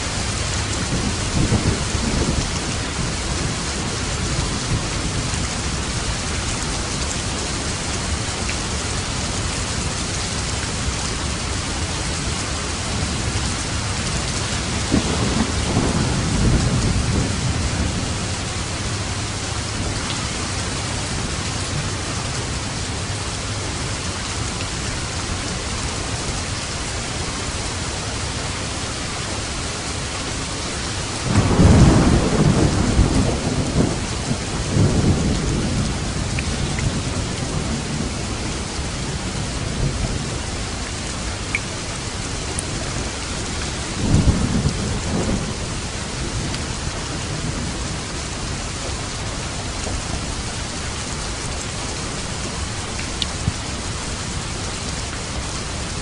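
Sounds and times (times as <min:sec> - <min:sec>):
heavy rain on a roof: 0:00.0 - 0:56.0
thunder rumbling: 0:00.2 - 0:06.5, 0:10.7 - 0:23.2, 0:31.2 - 0:41.4, 0:42.1 - 0:56.0.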